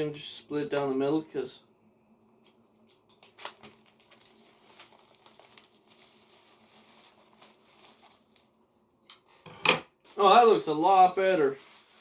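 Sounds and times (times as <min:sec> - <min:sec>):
plastic wrap crinkling: 0:02.9 - 0:08.8, 0:10.0 - 0:12.0.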